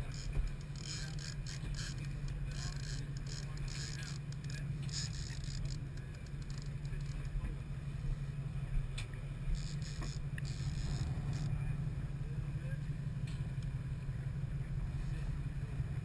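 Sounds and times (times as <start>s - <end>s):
light clicks and rustles: 0.0s - 7.6s
boat engine humming: 0.0s - 16.0s.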